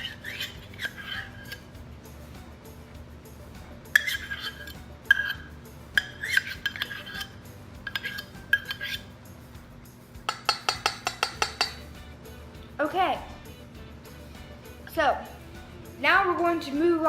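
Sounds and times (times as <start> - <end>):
spoon scraping a cup: 0.0 - 1.7, 3.9 - 9.1.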